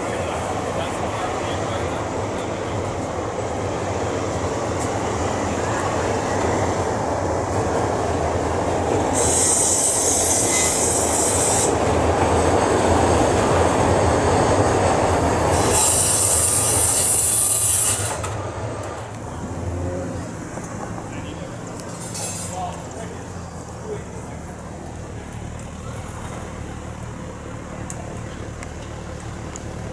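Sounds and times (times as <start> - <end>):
train rail rumble: 0.0 - 29.9
train wheel squeal: 8.1 - 19.5.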